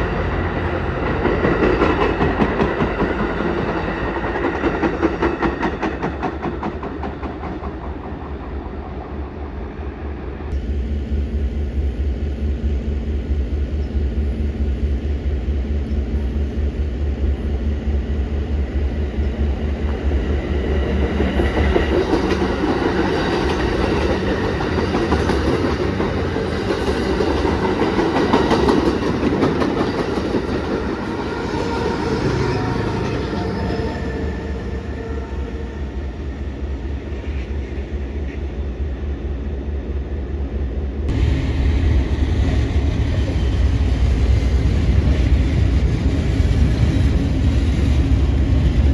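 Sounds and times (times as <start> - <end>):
train low rumble: 0.0 - 48.9
train wheels clacking over rail joints: 1.0 - 9.1.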